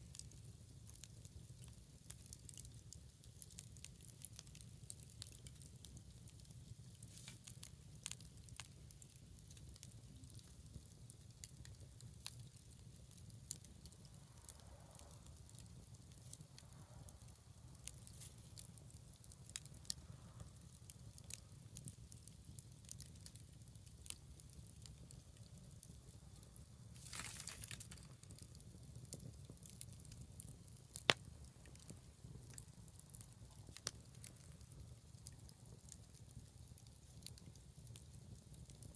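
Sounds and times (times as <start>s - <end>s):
bonfire crackling: 0.0s - 38.9s
fire popping: 0.0s - 38.9s.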